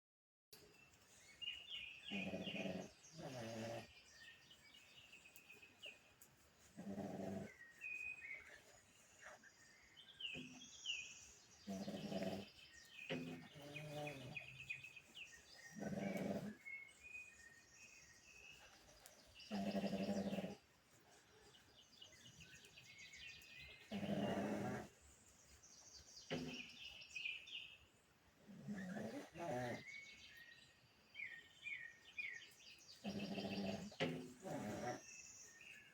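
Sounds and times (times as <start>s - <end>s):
birds chirping: 0.6s - 35.9s
dog snoring: 2.1s - 4.0s, 6.8s - 7.6s, 11.7s - 14.6s, 15.7s - 16.7s, 19.5s - 20.6s, 23.9s - 25.0s, 28.4s - 29.9s, 33.0s - 35.1s.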